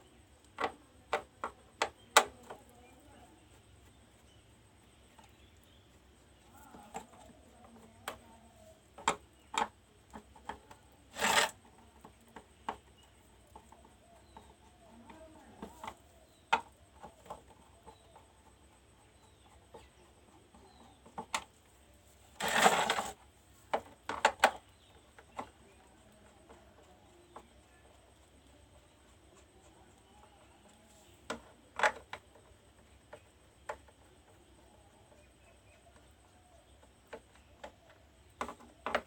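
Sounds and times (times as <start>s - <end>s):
clicks and knocks of handling: 0.4s - 3.0s, 6.6s - 18.6s, 22.4s - 26.6s, 30.6s - 34.4s, 36.8s - 39.0s
short rasping scrapes: 11.1s - 11.8s, 22.2s - 23.2s.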